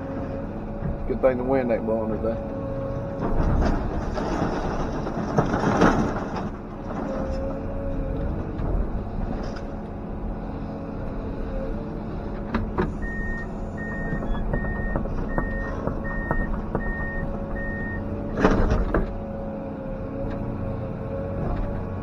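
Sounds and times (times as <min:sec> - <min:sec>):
excavator diesel engine running: 0:00.0 - 0:22.0
demolition crashing and clattering: 0:03.2 - 0:09.7
reversing alarm beeping: 0:13.0 - 0:18.1.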